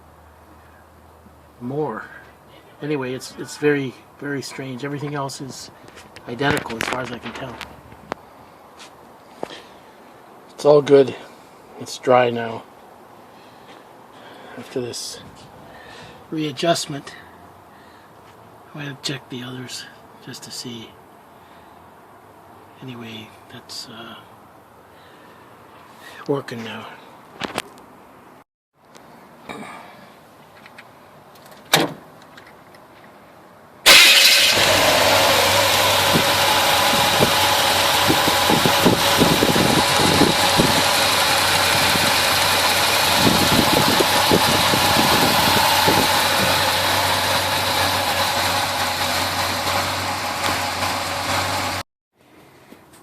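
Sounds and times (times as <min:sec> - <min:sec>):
car engine starting and running: 0:33.9 - 0:51.8.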